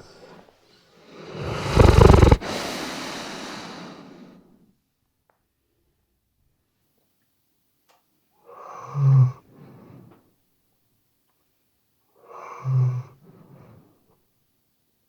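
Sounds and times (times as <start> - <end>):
dog snoring: 1.3 - 3.2.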